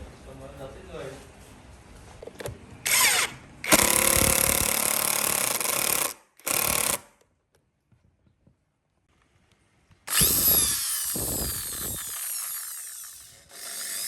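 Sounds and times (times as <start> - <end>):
handheld power tool running: 2.9 - 7.1, 10.1 - 14.0.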